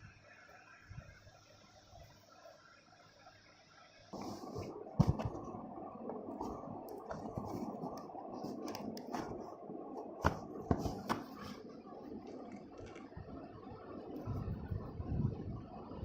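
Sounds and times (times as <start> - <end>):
handling rustling and scraping: 6.4 - 13.1.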